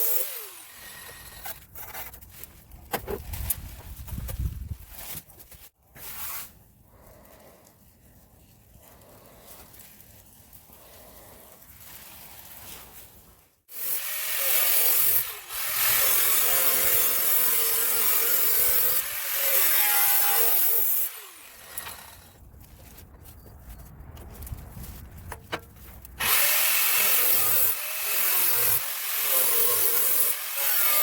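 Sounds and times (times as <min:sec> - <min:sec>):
power tool cutting sheet metal: 0:00.0 - 0:01.6, 0:13.7 - 0:22.3, 0:26.2 - 0:31.0.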